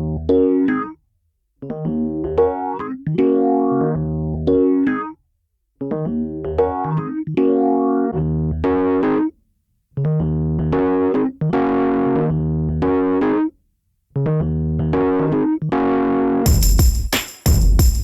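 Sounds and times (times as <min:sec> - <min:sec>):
electric piano chords: 0:00.0 - 0:01.0, 0:01.7 - 0:05.1, 0:05.9 - 0:09.3.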